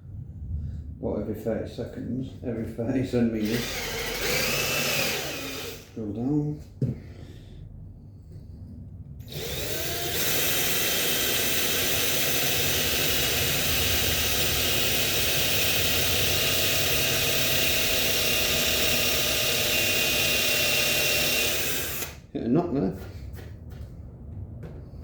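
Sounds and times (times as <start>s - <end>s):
electric drill boring into wood: 3.4s - 6.0s, 9.3s - 22.2s.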